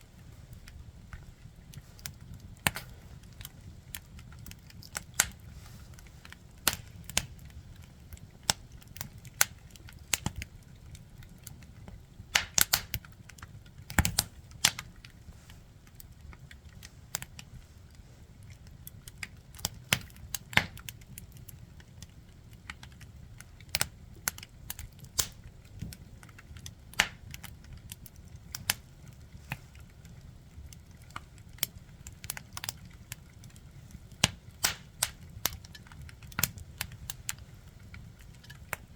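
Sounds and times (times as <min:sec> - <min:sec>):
firewood crackling and popping: 0:00.0 - 0:38.9
low rumble of fire: 0:00.0 - 0:38.9.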